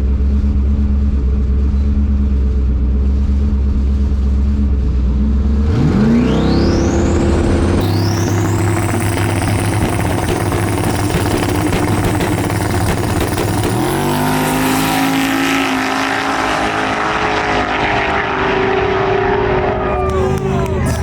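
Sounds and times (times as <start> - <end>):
race car engines revving: 5.2 - 21.0.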